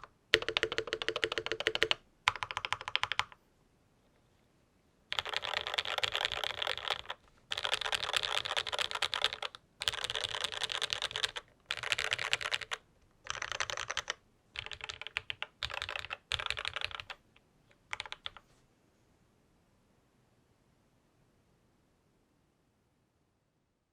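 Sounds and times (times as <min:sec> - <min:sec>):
mechanical keyboard typing: 0:00.0 - 0:03.4, 0:05.1 - 0:18.4.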